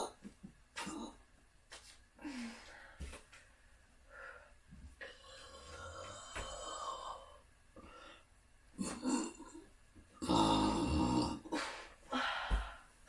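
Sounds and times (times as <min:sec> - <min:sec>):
person burping into balloon: 0:08.8 - 0:11.5.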